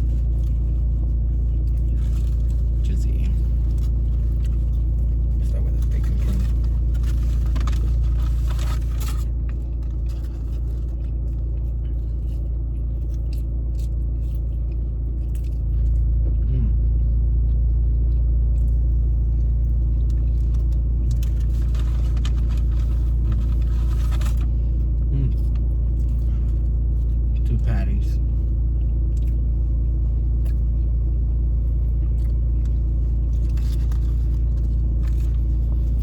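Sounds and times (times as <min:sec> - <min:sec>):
crinkly wrapper rustles: 0:00.0 - 0:14.4, 0:19.4 - 0:24.6, 0:32.6 - 0:36.0
low rumble: 0:00.0 - 0:36.0.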